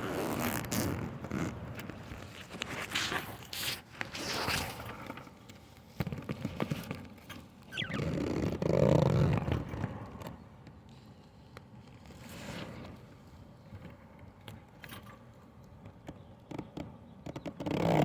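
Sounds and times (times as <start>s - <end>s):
rustling and scraping: 0.0s - 14.0s.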